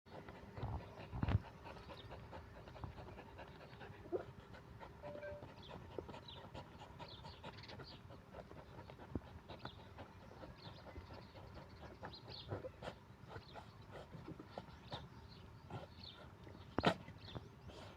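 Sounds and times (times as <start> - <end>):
puppy panting: 0.1 - 17.9
puppy whining: 5.0 - 5.6.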